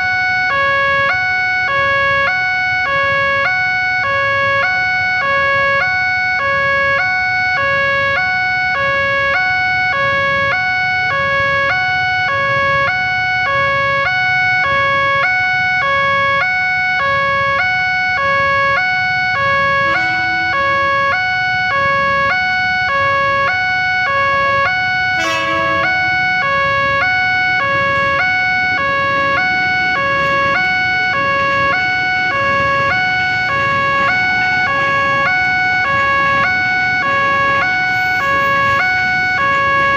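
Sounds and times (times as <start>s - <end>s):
two-tone crossing alarm: 0.0s - 39.9s
constant high tone: 17.7s - 39.9s.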